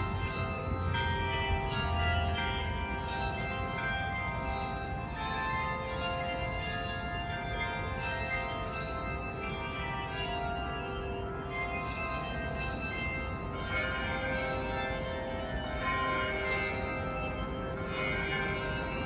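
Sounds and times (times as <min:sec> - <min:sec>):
bells ringing: 0:00.0 - 0:19.0.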